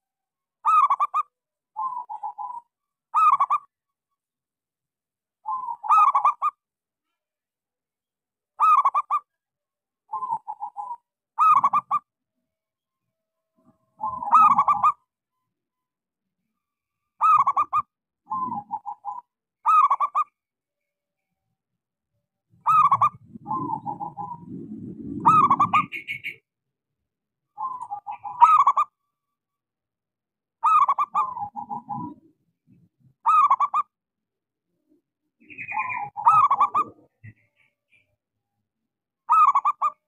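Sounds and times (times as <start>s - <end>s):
dove cooing: 1.8s - 3.6s, 10.1s - 12.0s, 14.0s - 15.0s, 17.2s - 20.2s, 22.6s - 26.4s, 27.6s - 28.9s, 30.6s - 32.3s, 33.2s - 33.9s, 35.4s - 37.5s.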